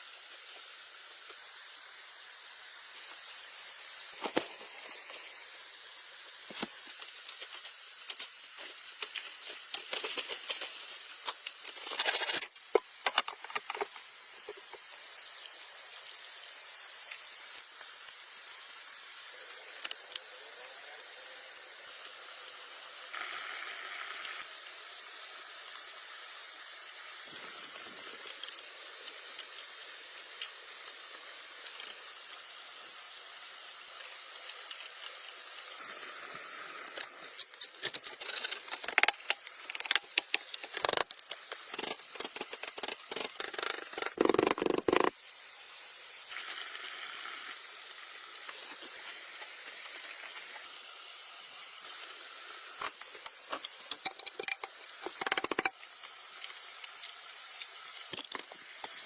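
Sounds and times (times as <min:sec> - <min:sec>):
sharp clicks and knocks: 0:37.4 - 0:45.1, 0:52.8 - 0:55.8.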